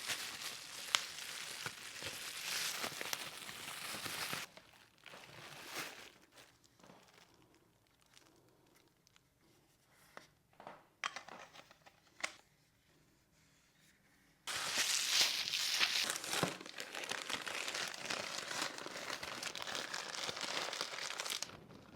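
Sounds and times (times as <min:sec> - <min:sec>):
packaging crinkling and tearing: 0:00.0 - 0:09.2, 0:14.5 - 0:21.9.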